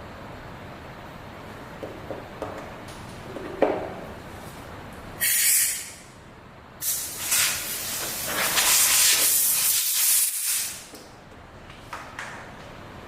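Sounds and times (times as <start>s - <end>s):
gas jet hissing: 5.2s - 6.0s, 6.8s - 10.8s.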